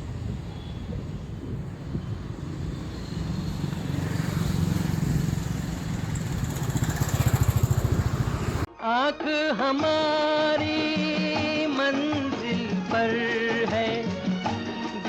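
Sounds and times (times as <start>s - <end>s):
vehicle engine rumble: 0.0s - 8.7s.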